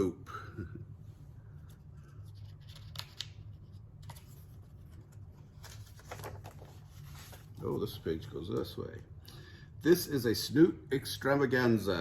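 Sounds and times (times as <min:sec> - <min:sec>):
low steady hum: 0:00.0 - 0:12.0
book pages turning: 0:01.7 - 0:08.7.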